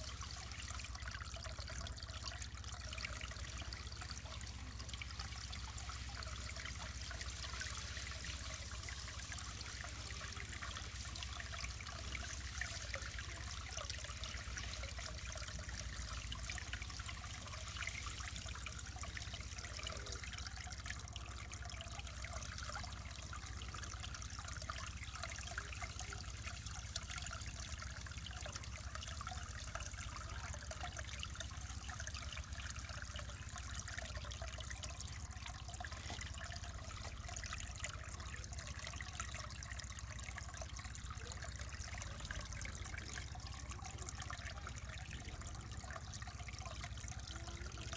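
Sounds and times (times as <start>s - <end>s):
stream trickling over rocks: 0.0s - 47.9s.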